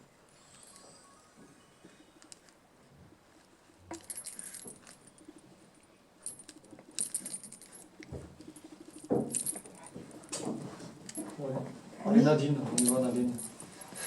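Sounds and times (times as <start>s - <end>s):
small metal pieces jingling: 3.9s - 5.2s, 6.2s - 7.9s.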